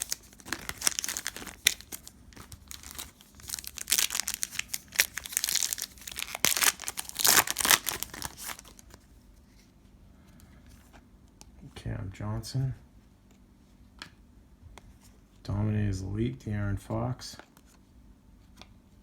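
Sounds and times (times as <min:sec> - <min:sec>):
wrapper crinkling and tearing: 0:00.0 - 0:09.0.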